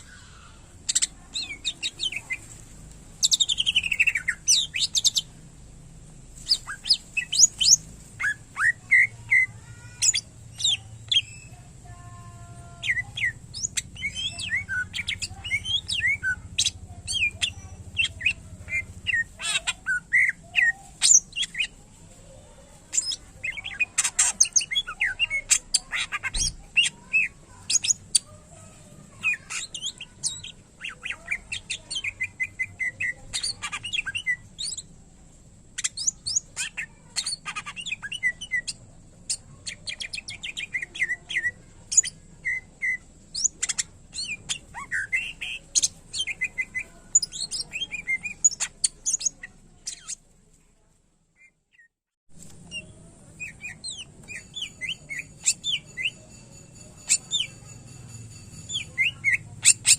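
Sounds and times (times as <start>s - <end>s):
bird singing varied song: 0.0s - 5.4s, 6.3s - 35.0s, 35.8s - 50.3s, 51.4s - 59.9s.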